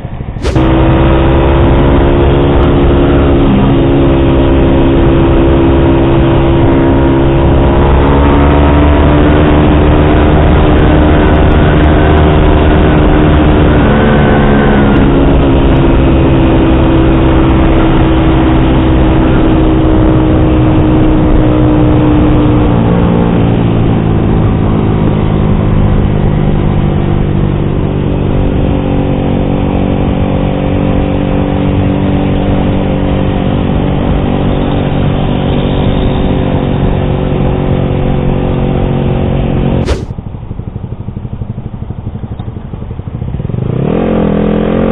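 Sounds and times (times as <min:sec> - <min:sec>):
motorcycle engine running: 0:00.0 - 0:30.2, 0:39.8 - 0:43.8.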